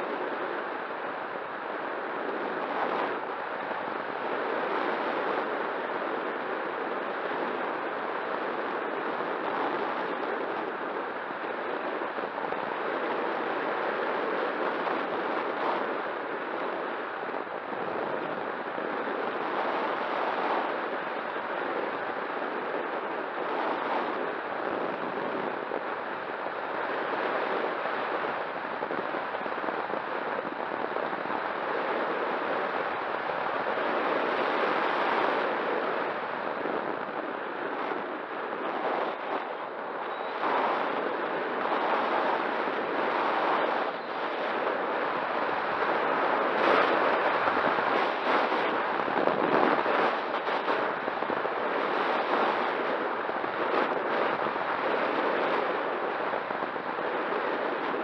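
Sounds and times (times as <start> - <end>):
faint steady hum: 0.0 - 58.0
wind buffeting microphone: 0.0 - 58.0.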